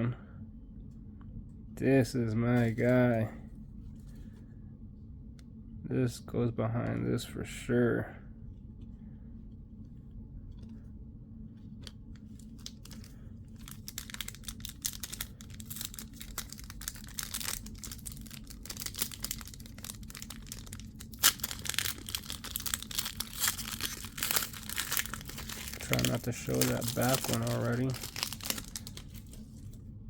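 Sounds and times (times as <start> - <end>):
wrapper being torn and crinkled: 12.4 - 29.8.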